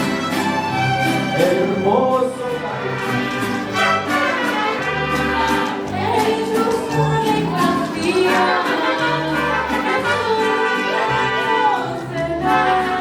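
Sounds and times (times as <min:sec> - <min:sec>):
mariachi band playing: 0:00.0 - 0:13.0
several voices singing together: 0:04.8 - 0:13.0.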